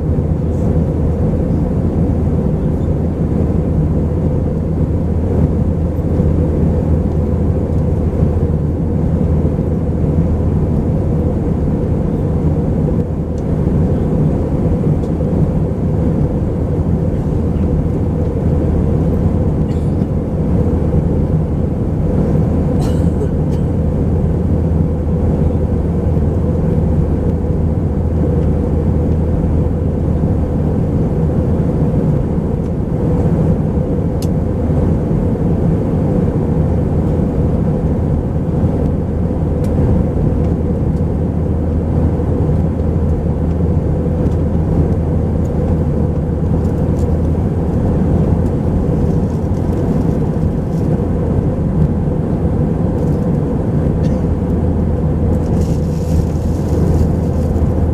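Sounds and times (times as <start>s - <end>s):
jet engines humming: 0.0s - 57.9s
rushing airflow: 23.4s - 57.9s.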